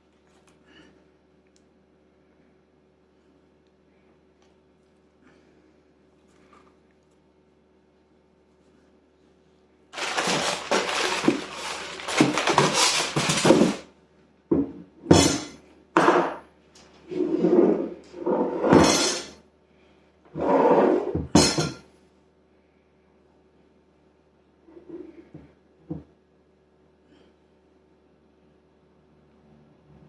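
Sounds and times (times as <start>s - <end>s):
packaging rustling: 10.0s - 13.8s
parts clattering: 10.0s - 13.9s.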